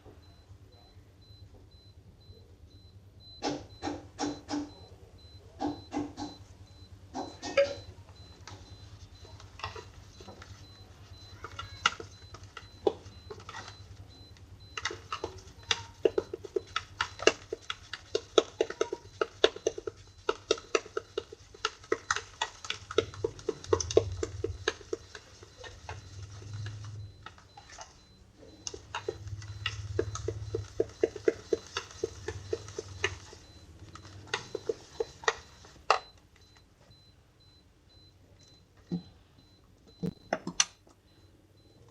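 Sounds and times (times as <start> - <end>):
slime squishing and popping: 11.2 - 27.6.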